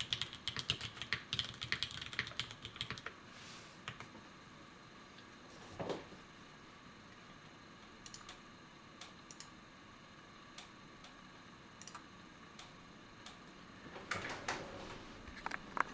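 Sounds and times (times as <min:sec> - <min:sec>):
mechanical keyboard keystrokes: 0:00.0 - 0:03.1.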